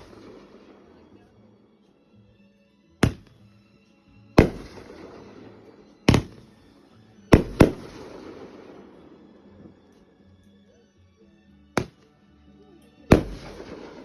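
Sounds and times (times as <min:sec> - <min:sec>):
fireworks bangs: 0:00.0 - 0:01.1, 0:03.0 - 0:03.4, 0:04.4 - 0:06.5, 0:07.4 - 0:09.0, 0:13.1 - 0:14.0.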